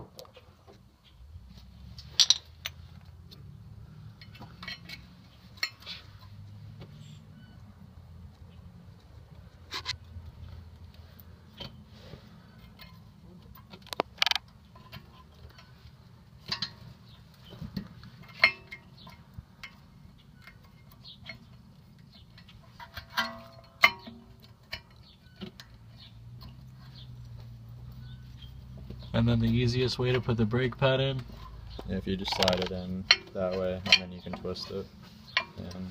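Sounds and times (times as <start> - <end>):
metallic clicks and clinks: 2.0 - 2.8, 4.0 - 6.4, 30.1 - 34.6.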